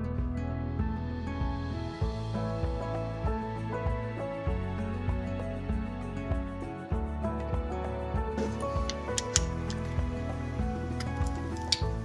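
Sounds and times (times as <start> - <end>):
background music with steady beat: 0.0 - 12.0
sharp clicks: 8.6 - 9.9.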